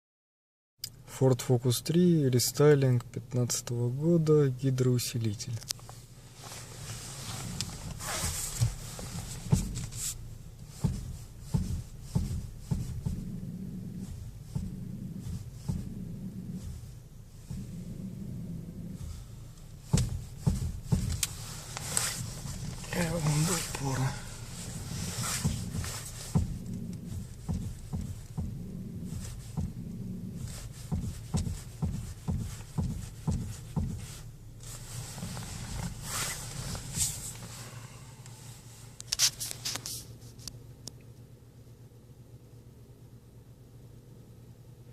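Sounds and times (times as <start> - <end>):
low steady hum: 0.8 - 44.9
rubbing friction noise: 5.8 - 37.8
metal-on-metal steering knocks: 19.8 - 21.3, 22.2 - 28.8.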